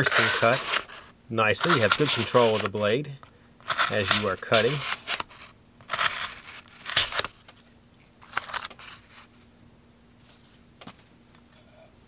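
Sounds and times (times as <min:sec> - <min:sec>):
knife slicing through cord: 0:01.6 - 0:02.8, 0:03.7 - 0:05.3.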